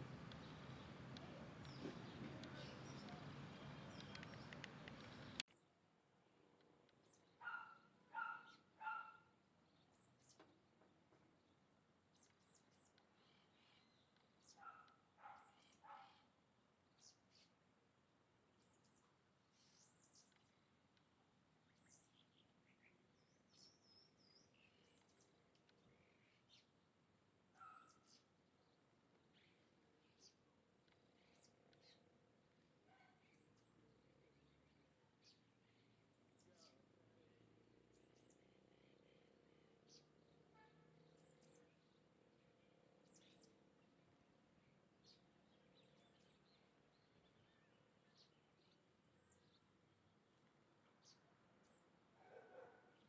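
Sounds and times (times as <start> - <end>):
small birds chirping: 0.0 - 5.8, 6.8 - 17.7, 18.5 - 53.0
faint high bird chirps: 7.0 - 10.5, 27.6 - 28.3.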